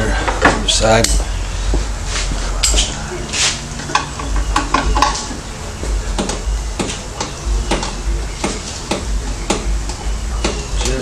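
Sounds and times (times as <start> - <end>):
handling noise: 0.2 - 11.0
hand tools clicking and knocking: 6.2 - 11.0.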